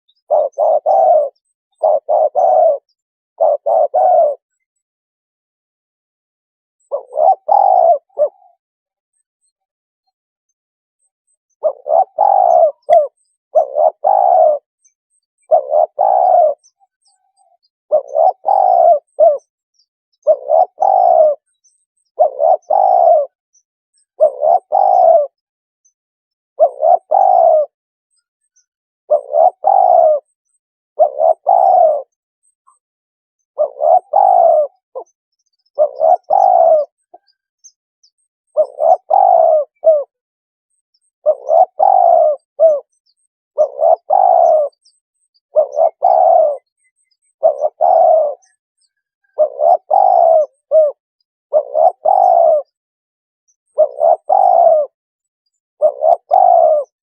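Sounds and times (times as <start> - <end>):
dove cooing: 0.1 - 4.6, 6.8 - 8.6, 11.6 - 14.7, 15.3 - 19.5, 20.2 - 23.4, 24.1 - 25.4, 26.6 - 27.8, 29.1 - 30.4, 31.0 - 32.8, 33.5 - 37.4, 38.5 - 40.2, 41.2 - 43.0, 43.6 - 52.8, 53.7 - 55.0, 55.8 - 57.0.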